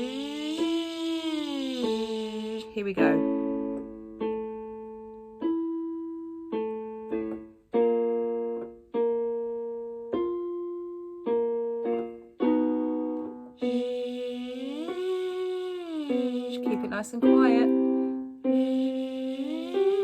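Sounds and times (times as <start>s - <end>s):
person singing buzzy zh sound: 0.0s - 3.0s, 13.6s - 17.7s, 18.5s - 20.0s
piano chords: 0.0s - 20.0s.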